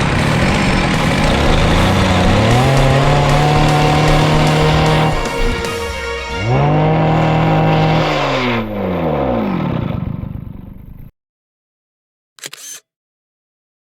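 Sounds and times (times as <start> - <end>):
chainsaw engine at high revs: 0.0 - 10.5.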